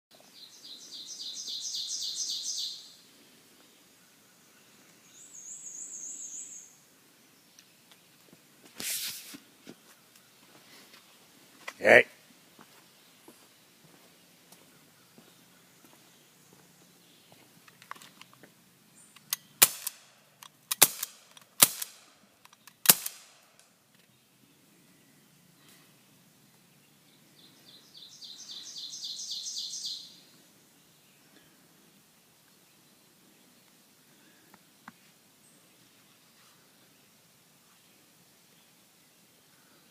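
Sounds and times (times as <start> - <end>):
bb gun shots: 19.6 - 20.0, 20.7 - 22.1, 22.8 - 23.4.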